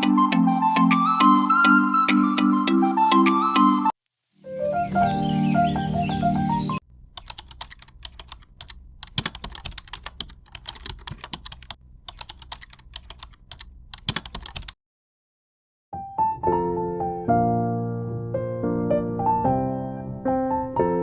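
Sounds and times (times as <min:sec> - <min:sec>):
music: 0:00.0 - 0:06.8, 0:15.9 - 0:21.0
computer keyboard typing: 0:07.1 - 0:14.8.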